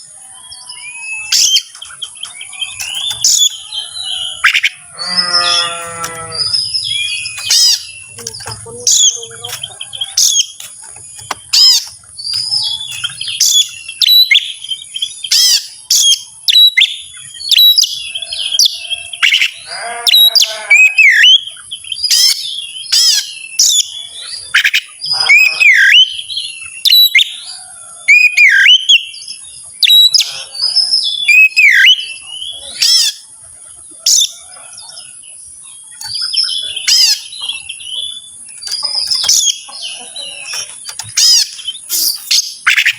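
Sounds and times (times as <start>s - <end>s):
bird singing loudly: 0.4s - 27.4s, 36.0s - 42.9s.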